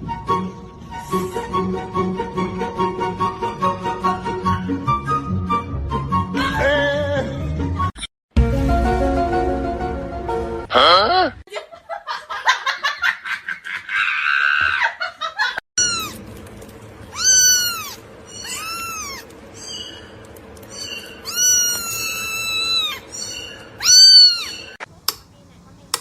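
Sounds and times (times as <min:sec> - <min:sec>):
cat meowing: 0:15.8 - 0:16.2, 0:17.1 - 0:19.3, 0:21.2 - 0:24.8.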